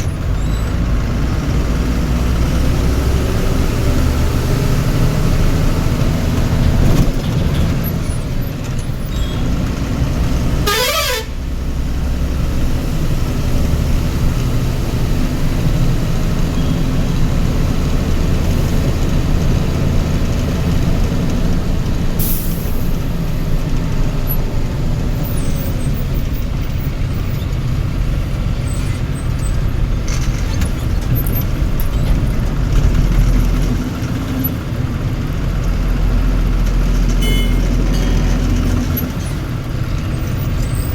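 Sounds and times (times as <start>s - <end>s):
heavy vehicle engine rumble: 0.0s - 40.9s
vehicle horn: 10.6s - 11.4s, 37.2s - 38.3s.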